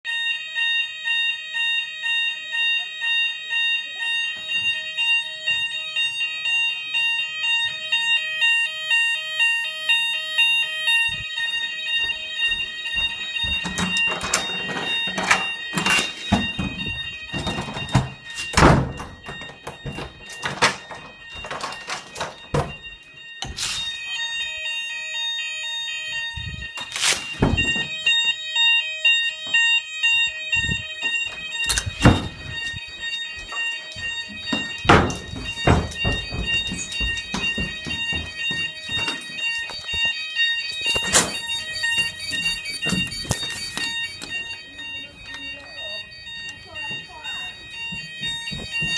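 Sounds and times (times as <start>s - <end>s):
fire alarm pulsing tone: 0.0s - 48.9s
loud knocks and thumps: 31.7s - 32.8s, 33.4s - 39.4s.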